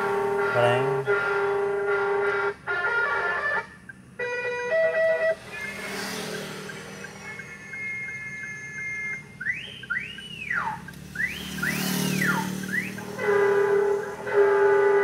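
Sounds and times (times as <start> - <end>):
loud air horn blast: 0.0 - 3.7, 13.0 - 15.0
electronic horn tones and sweeps: 0.0 - 9.8, 10.5 - 15.0.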